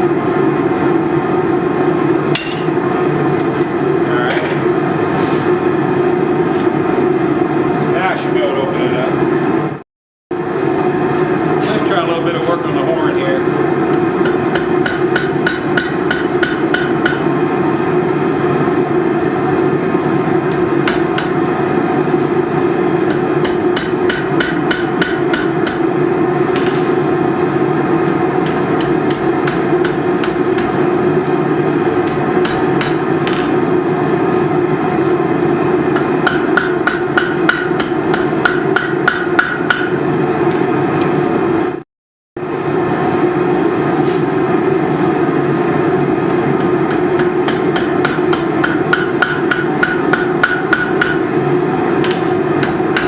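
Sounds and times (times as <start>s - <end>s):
hammer ringing on anvil: 2.4s - 2.8s, 3.4s - 4.0s, 14.2s - 17.3s, 23.1s - 25.8s, 36.0s - 40.0s, 46.9s - 51.2s.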